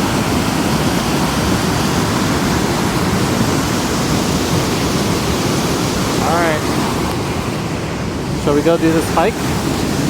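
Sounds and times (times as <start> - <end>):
running water rushing: 0.0 - 10.0.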